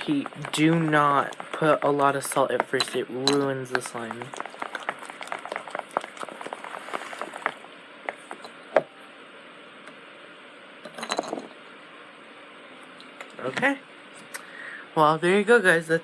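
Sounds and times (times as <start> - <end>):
stick tapping in container: 0.0 - 8.9.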